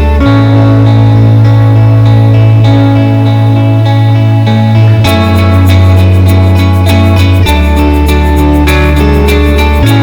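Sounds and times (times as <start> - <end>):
guitar: 0.0 - 10.0
steady bass: 0.0 - 10.0.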